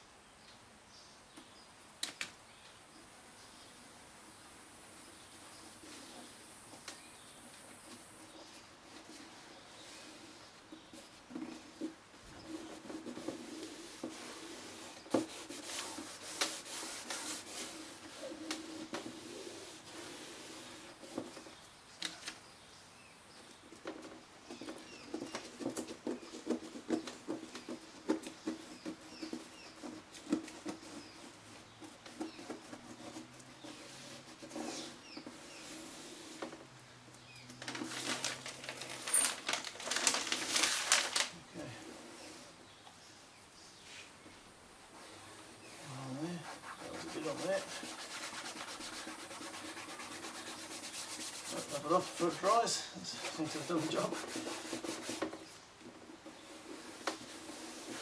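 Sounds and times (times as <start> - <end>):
fabric rubbing and scraping: 8.4 - 21.4, 28.4 - 36.6, 37.6 - 44.2, 44.9 - 58.0.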